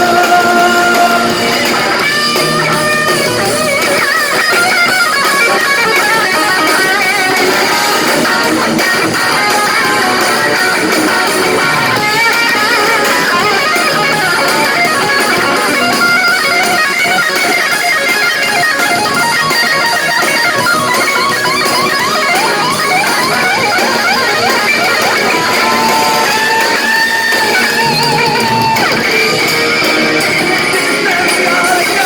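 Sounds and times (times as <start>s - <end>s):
rock band playing live: 0.0s - 32.0s
sliding guitar runs: 0.0s - 32.0s.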